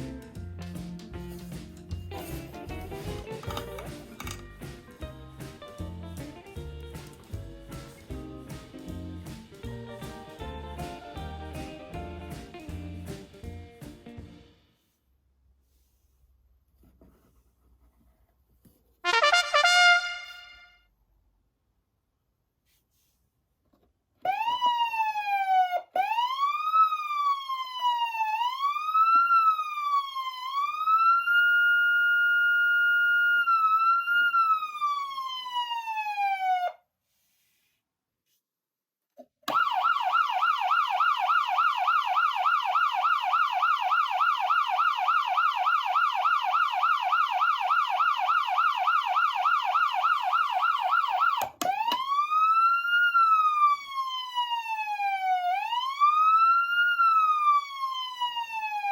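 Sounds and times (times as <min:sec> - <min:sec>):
electronic siren wail: 0:24.3 - 0:36.8, 0:39.5 - 0:58.9
electronic siren fast yelp: 0:30.6 - 0:36.8, 0:39.5 - 0:58.9.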